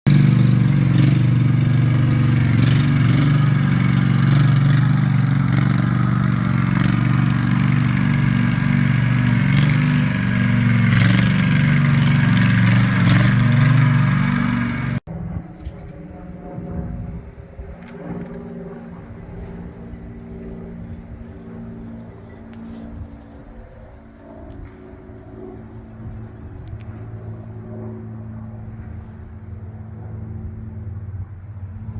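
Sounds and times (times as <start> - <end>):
engine droning: 0.0 - 31.9.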